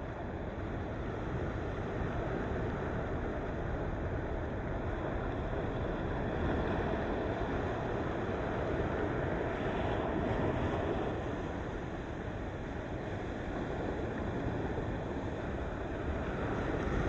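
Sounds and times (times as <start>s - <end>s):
ocean waves breaking: 0.4s - 17.0s.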